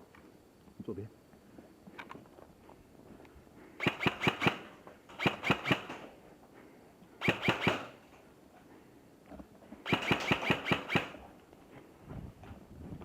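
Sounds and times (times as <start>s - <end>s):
airsoft rifle firing bursts: 3.8s - 6.1s, 7.2s - 8.0s, 9.8s - 11.2s.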